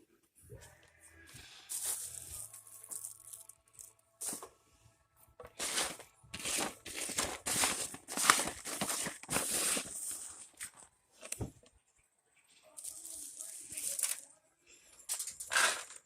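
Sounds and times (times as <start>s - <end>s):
dry material crumpling: 5.6s - 10.8s.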